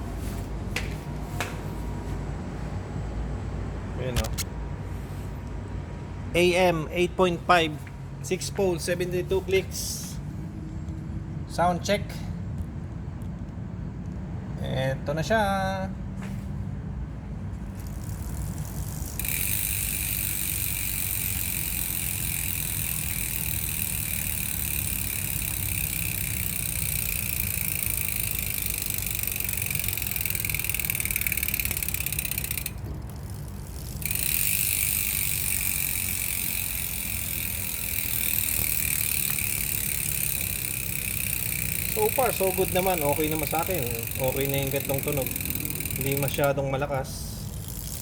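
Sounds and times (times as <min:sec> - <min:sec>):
bicycle hub ratchet clicking: 0:04.2 - 0:04.5, 0:17.6 - 0:48.0.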